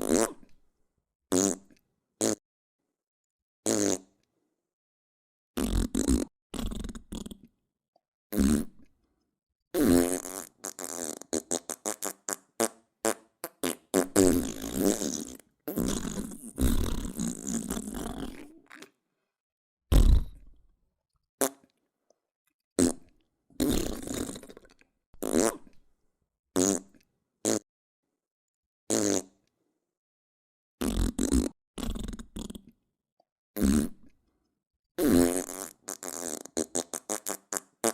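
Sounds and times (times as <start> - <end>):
farts: 0.0 - 0.6, 1.3 - 2.4, 3.6 - 4.2, 5.6 - 7.5, 8.3 - 8.9, 9.8 - 18.9, 19.9 - 20.6, 22.8 - 25.8, 26.6 - 27.6, 28.9 - 29.4, 30.8 - 32.7, 33.6 - 34.1, 35.0 - 37.9.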